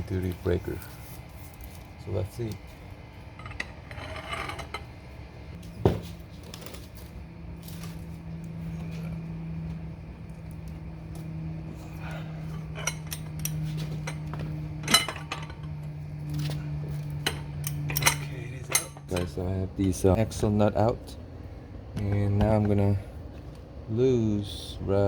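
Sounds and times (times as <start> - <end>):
steady low hum: 0.0 - 25.0
metal tools clinking: 3.3 - 4.9, 11.9 - 20.2.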